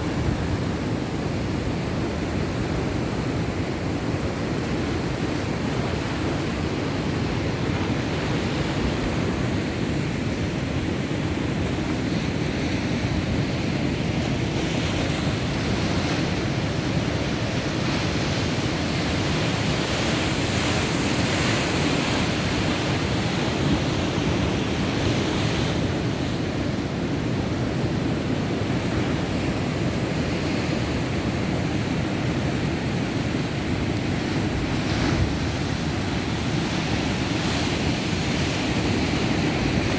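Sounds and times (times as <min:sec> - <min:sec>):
waves breaking: 0:00.0 - 0:39.9
wind on microphone: 0:00.0 - 0:39.9.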